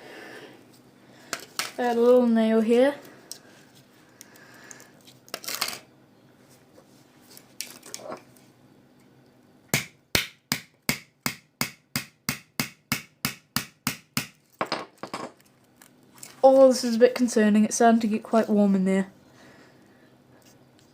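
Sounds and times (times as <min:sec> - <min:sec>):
hammer striking nail: 0:09.7 - 0:14.3.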